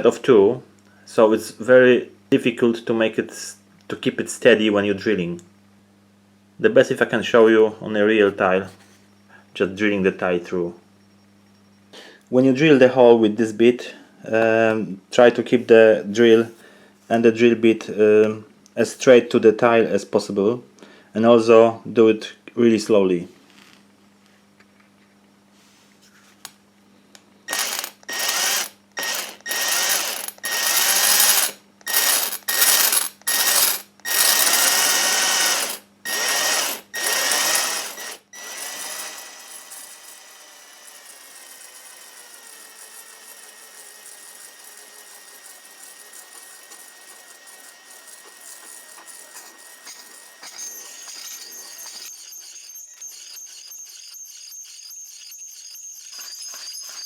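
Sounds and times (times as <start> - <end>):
power drill cutting ceramic tile: 27.5 - 57.0.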